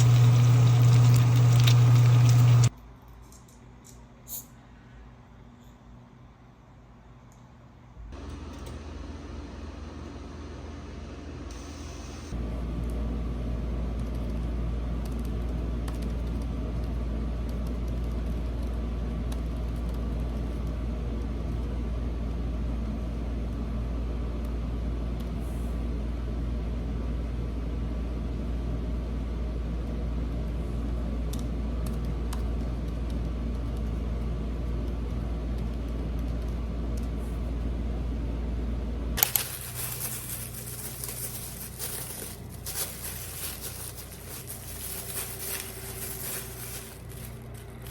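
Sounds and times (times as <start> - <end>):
machine humming with whine: 0.0 - 2.7.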